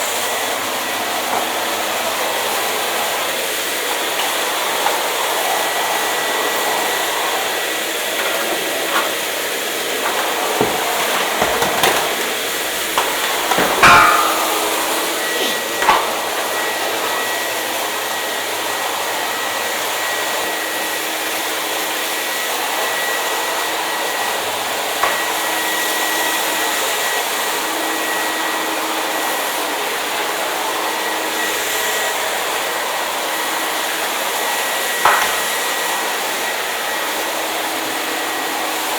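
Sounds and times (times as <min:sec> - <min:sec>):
hair dryer running: 0:00.0 - 0:38.9.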